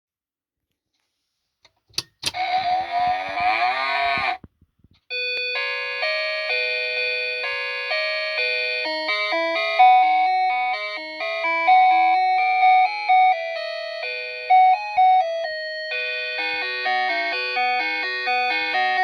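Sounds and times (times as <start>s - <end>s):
alarm clock clicks: 2.0s - 2.6s.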